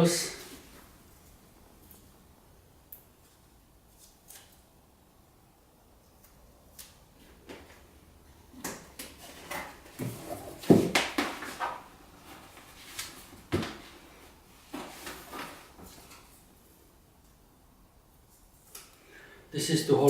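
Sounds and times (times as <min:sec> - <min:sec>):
cable knocking and rustling in box: 0:08.7 - 0:11.8.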